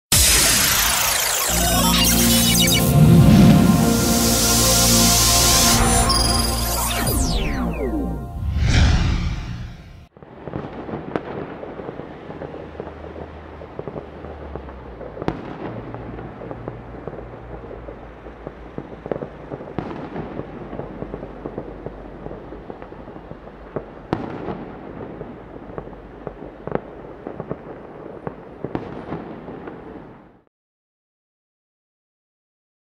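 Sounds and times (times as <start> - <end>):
intro music: 0.1 - 9.7
distant gunfire crackle: 10.2 - 30.3.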